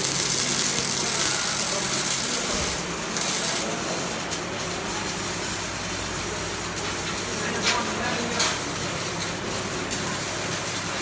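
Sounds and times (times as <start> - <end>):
welding arc crackling hiss: 0.0 - 11.0.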